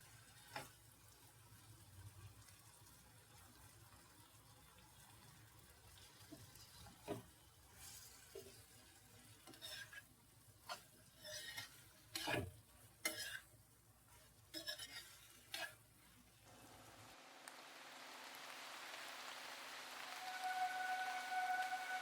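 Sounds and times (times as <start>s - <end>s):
spoon scraping a pan: 9.4s - 13.5s, 14.1s - 15.8s.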